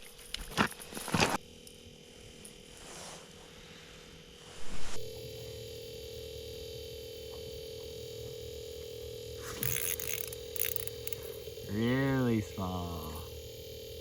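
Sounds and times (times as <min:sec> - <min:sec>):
steady electronic tone: 0:03.8 - 0:14.0.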